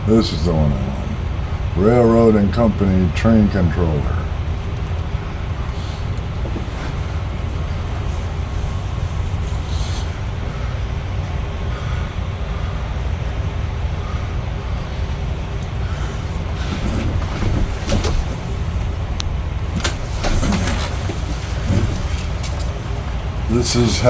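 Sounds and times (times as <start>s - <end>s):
low machinery rumble: 0.0s - 24.0s
sharp clicks: 4.6s - 5.1s.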